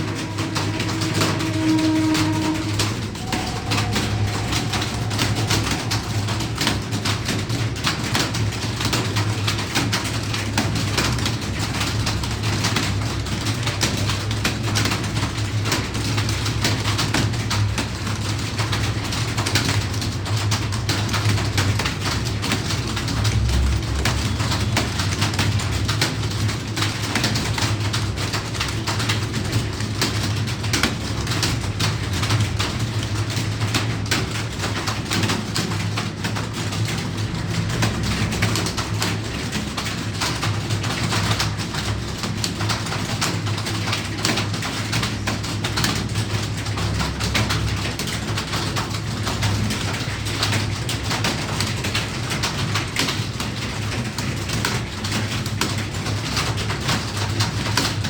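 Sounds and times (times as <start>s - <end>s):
steady low hum: 0.0s - 8.6s.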